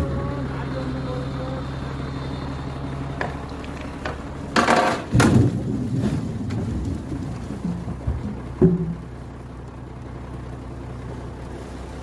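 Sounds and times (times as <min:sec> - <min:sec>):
logs knocking: 0:03.2 - 0:09.2
wood clattering: 0:03.2 - 0:09.2
logs crashing: 0:03.2 - 0:09.4.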